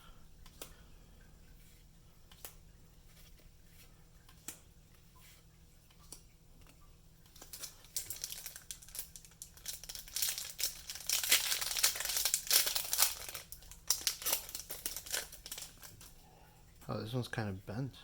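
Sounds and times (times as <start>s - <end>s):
foil wrapper crinkling and tearing: 7.4s - 16.1s.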